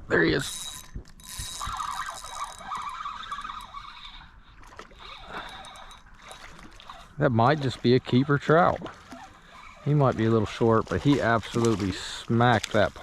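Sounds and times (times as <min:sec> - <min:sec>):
fishing reel whirring: 0:00.2 - 0:13.0.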